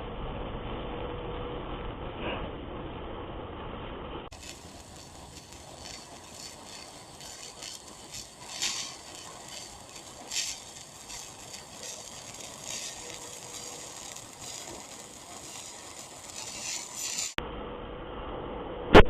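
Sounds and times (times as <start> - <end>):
sharp pops of spatter: 4.3 - 17.4
welding arc hissing and crackling: 4.3 - 17.4.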